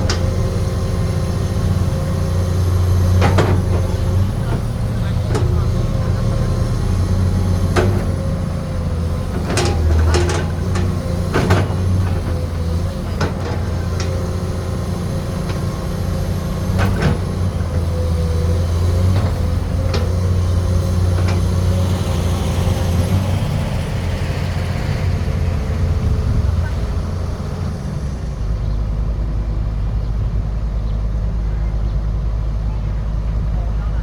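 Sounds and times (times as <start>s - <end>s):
excavator diesel engine running: 0.0s - 34.0s
metallic knocks and clanks: 3.1s - 5.8s, 7.6s - 8.3s, 9.3s - 14.4s.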